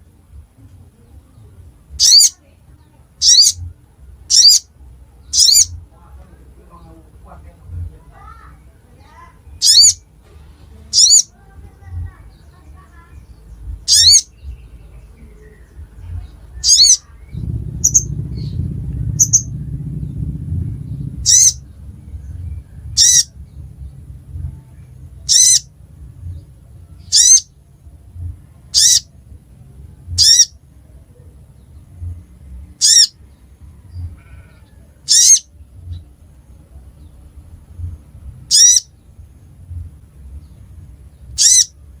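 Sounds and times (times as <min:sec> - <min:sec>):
low rumble: 0:00.0 - 0:42.0
bird calling: 0:02.0 - 0:02.4, 0:03.2 - 0:03.7, 0:04.3 - 0:04.7, 0:05.3 - 0:05.8, 0:09.5 - 0:10.0, 0:10.9 - 0:11.4, 0:13.9 - 0:18.1, 0:19.1 - 0:19.5, 0:21.2 - 0:21.6, 0:23.0 - 0:23.3, 0:25.2 - 0:25.7, 0:27.0 - 0:27.5, 0:28.8 - 0:29.1, 0:30.2 - 0:30.6, 0:32.8 - 0:33.2, 0:33.9 - 0:35.5, 0:38.5 - 0:38.9, 0:41.4 - 0:41.8
high bird chirps: 0:02.0 - 0:02.4, 0:03.2 - 0:03.7, 0:04.3 - 0:05.8, 0:09.5 - 0:10.1, 0:10.9 - 0:11.3, 0:12.3 - 0:20.2, 0:21.2 - 0:23.6, 0:25.2 - 0:25.7, 0:27.0 - 0:27.6, 0:28.8 - 0:29.1, 0:30.2 - 0:30.6, 0:32.8 - 0:33.2, 0:33.9 - 0:35.5, 0:38.5 - 0:38.9, 0:41.4 - 0:41.8.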